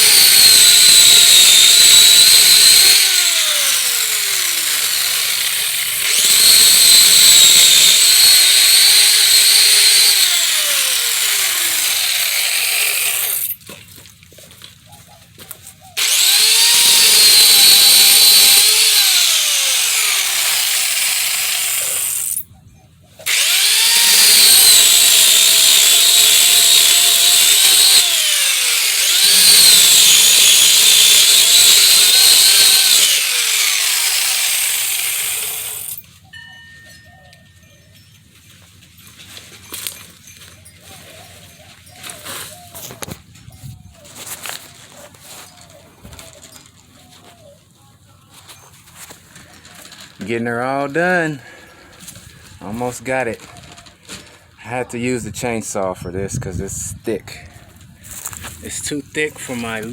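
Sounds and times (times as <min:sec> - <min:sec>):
chainsaw cutting branches: 0:00.0 - 0:13.7, 0:16.0 - 0:22.4, 0:23.2 - 0:36.2.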